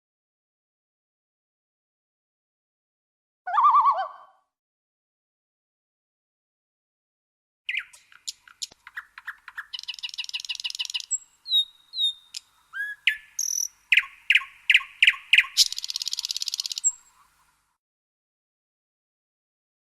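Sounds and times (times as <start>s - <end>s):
songbird singing: 7.7s - 17.8s.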